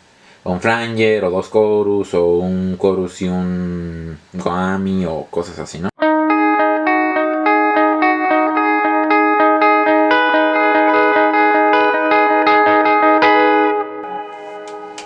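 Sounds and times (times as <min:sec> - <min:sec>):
electric guitar picked notes: 0:06.0 - 0:15.0
held ringing guitar note: 0:06.0 - 0:15.0.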